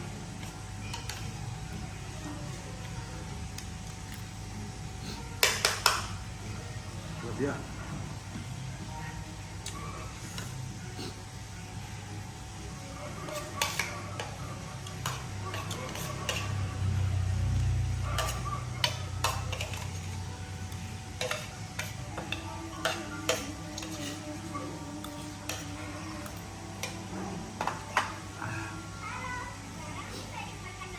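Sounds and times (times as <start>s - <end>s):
cutlery clinking on plates: 13.3s - 16.6s, 18.1s - 20.0s, 21.2s - 24.2s.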